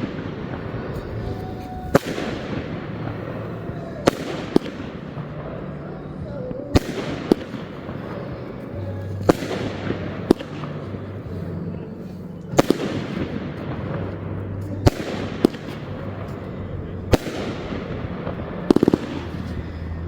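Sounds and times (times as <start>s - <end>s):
firework shells bursting: 0.0s - 5.6s, 6.8s - 11.6s, 12.4s - 20.0s
fireworks crackling and fizzing: 0.0s - 20.0s.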